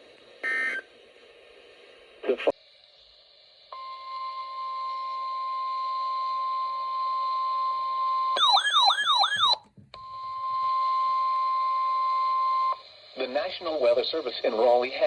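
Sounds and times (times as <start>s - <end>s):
warbling siren-like tone: 8.4s - 9.6s.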